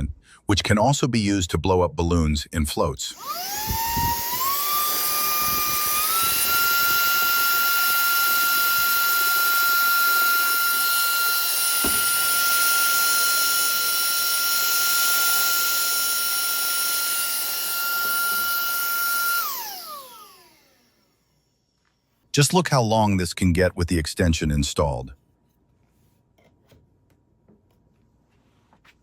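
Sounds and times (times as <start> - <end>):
handheld vacuum motor whine: 3.0 - 22.1.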